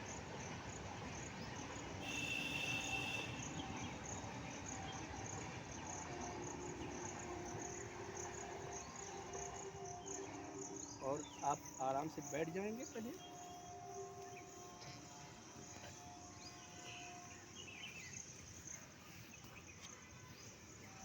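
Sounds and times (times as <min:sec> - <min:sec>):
insects chirping: 0:00.3 - 0:21.0.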